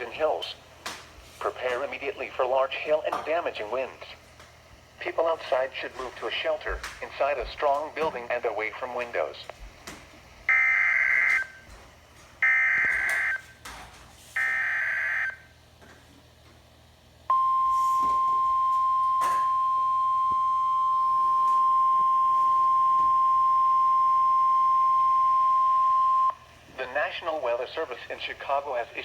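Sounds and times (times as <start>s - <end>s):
steady warning alarm tone: 10.5s - 11.7s, 12.4s - 13.6s, 14.4s - 15.5s, 17.3s - 26.5s.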